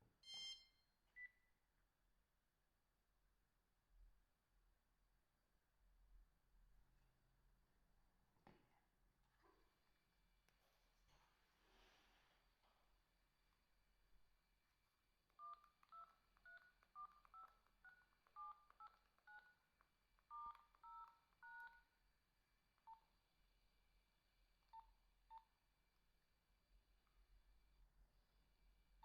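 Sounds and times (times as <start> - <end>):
dual-tone keypad beeps: 0.2 - 1.3, 15.4 - 19.6, 20.3 - 21.8
single lower beeps: 0.2 - 1.4.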